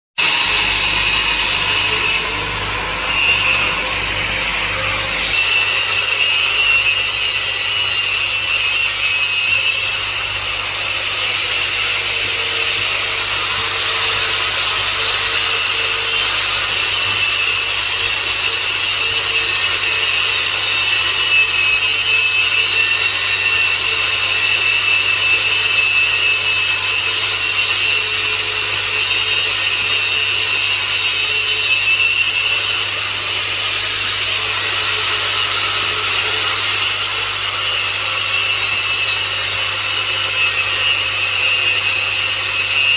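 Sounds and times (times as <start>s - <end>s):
angle grinder cutting metal: 0.2s - 42.9s.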